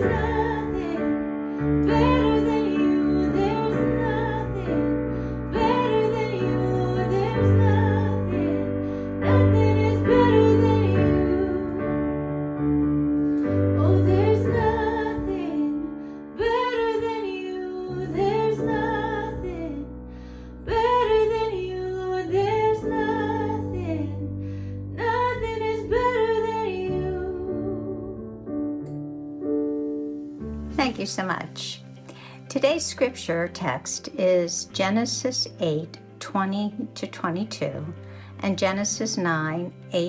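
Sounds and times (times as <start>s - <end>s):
woman singing with vibrato: 0.0s - 1.2s, 1.8s - 11.8s
piano chords: 0.0s - 40.0s.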